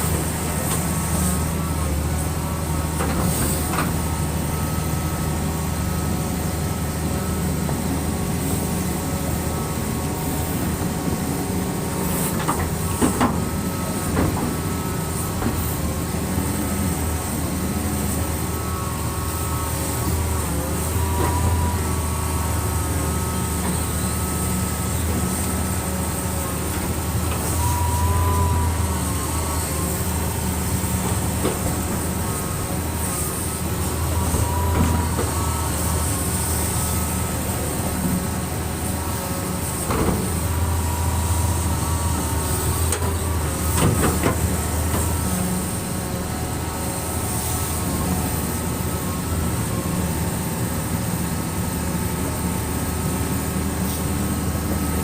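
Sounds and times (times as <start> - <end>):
diesel engine running under load: 0.0 - 55.0.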